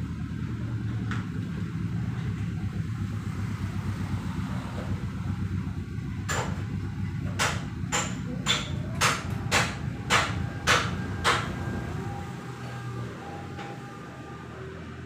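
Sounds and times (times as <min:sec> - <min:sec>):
steady low rumble: 0:00.0 - 0:12.6
sharp knocks: 0:06.2 - 0:11.6.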